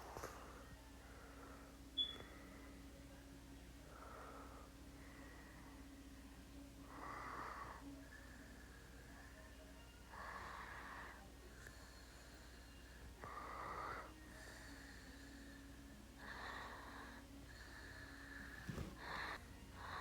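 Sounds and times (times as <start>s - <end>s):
noisy breathing: 0.0s - 3.0s, 3.7s - 20.0s
faint thin wheeze: 16.2s - 20.0s.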